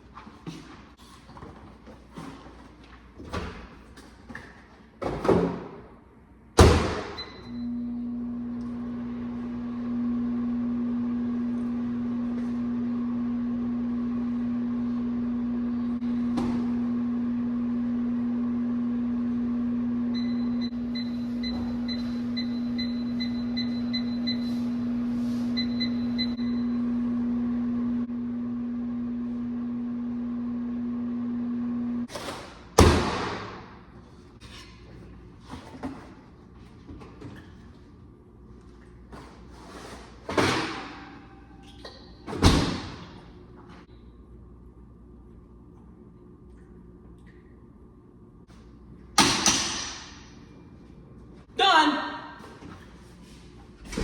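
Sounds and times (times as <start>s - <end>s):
microwave oven humming: 6.4s - 34.4s, 40.4s - 51.5s.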